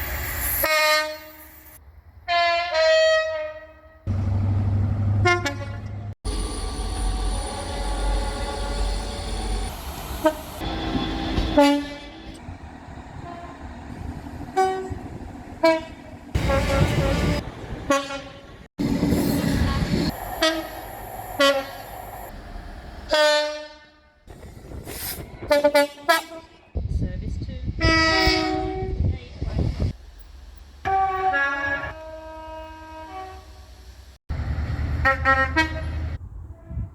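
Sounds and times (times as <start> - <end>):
trains rumbling past: 0.0 - 2.3, 4.1 - 26.7, 28.5 - 36.9
train two-tone horn blasts: 0.6 - 1.6, 2.3 - 4.0, 5.2 - 6.1, 10.2 - 12.5, 13.1 - 13.7, 14.5 - 18.5, 19.5 - 20.7, 23.1 - 24.3, 27.8 - 29.1, 30.8 - 33.7, 35.0 - 36.9.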